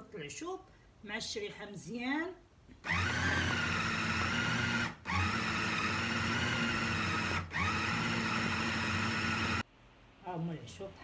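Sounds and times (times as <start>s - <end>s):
blender motor grinding: 2.8s - 9.6s.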